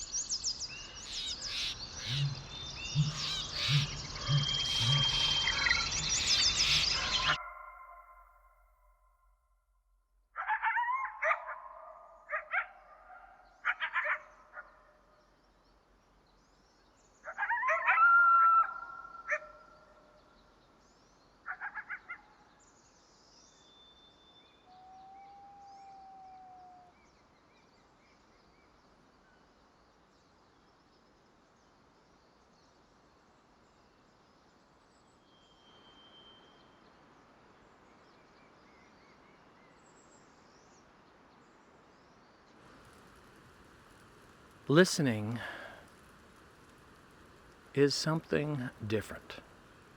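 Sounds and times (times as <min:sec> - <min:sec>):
bird whistles: 0:01.1 - 0:08.0
harsh animal calls: 0:01.5 - 0:07.9.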